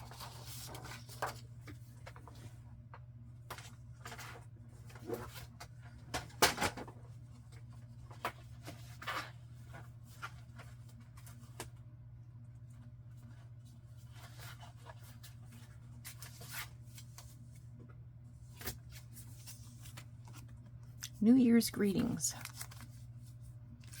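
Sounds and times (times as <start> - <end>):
paper rustling: 0.0 - 2.6, 12.7 - 20.8, 22.3 - 24.0.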